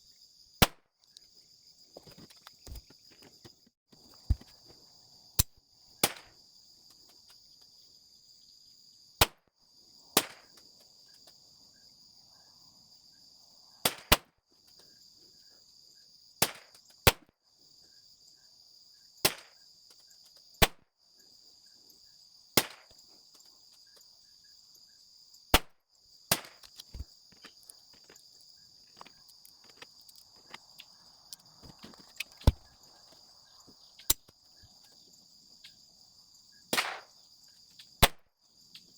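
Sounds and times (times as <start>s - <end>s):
insects buzzing: 0.0s - 38.9s
pistol shots cracking: 36.8s - 37.1s.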